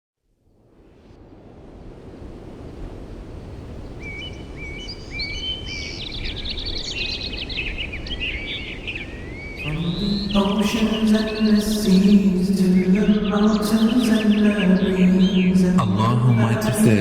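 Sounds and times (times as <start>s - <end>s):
birds chirping and singing: 3.8s - 17.0s.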